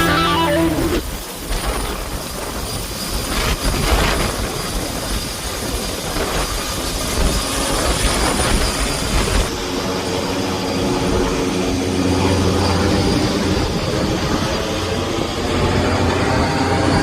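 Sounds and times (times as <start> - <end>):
faint high whine: 0.0 - 4.2
helicopter rotor and engine: 0.0 - 17.0.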